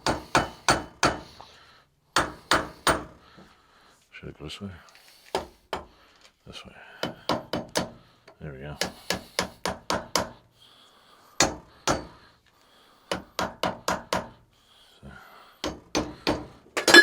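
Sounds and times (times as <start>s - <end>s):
hammer tapping metal vise: 0.0s - 1.3s, 2.2s - 3.2s, 7.0s - 8.0s, 8.8s - 10.4s, 11.4s - 12.2s, 13.1s - 14.3s, 15.6s - 17.0s.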